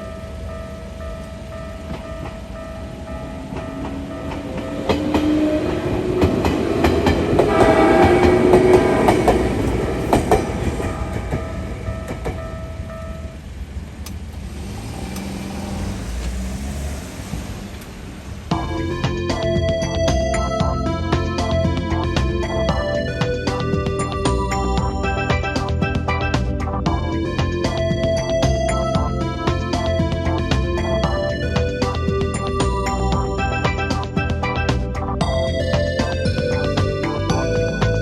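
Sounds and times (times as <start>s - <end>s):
electric train motor whine: 0.0s - 13.2s
crossing electronic warning tone: 0.0s - 13.6s, 18.5s - 38.0s
train wheels clacking over rail joints: 3.4s - 13.2s.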